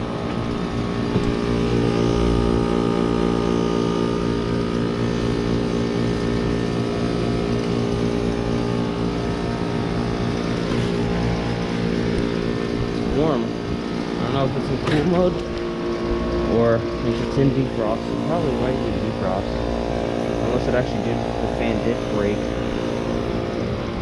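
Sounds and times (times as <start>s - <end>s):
heat pump compressor hum: 0.0s - 24.0s.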